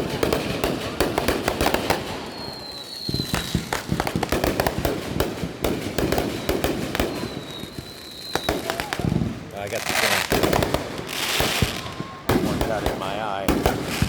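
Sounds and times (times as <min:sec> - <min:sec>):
fireworks popping and banging: 0:00.0 - 0:14.0
firework whistle: 0:01.6 - 0:04.3, 0:06.2 - 0:09.3, 0:09.9 - 0:14.0.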